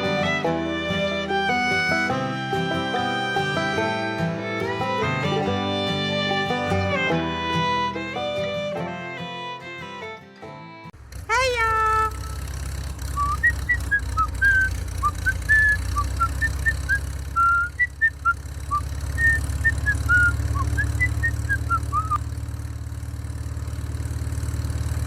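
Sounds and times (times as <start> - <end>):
low motor hum: 0.0 - 10.2, 10.9 - 25.0
whistled chirps: 13.1 - 22.2.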